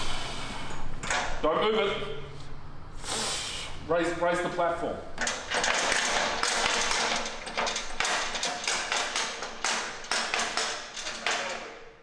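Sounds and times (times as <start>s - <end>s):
sharp metallic knocks and taps: 5.2s - 11.8s.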